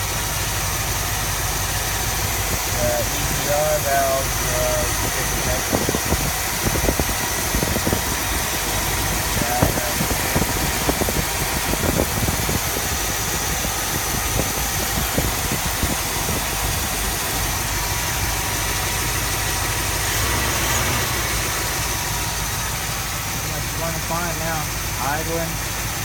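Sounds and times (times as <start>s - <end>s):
car engine idling: 0.0s - 26.0s.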